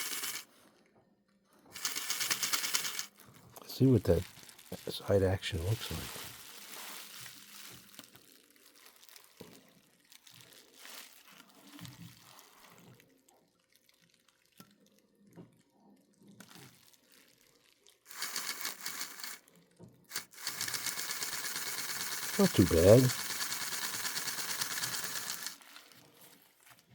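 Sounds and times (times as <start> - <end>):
model locomotive motor whirring: 0.0 - 0.5, 1.8 - 3.1, 18.1 - 19.4, 20.1 - 25.6.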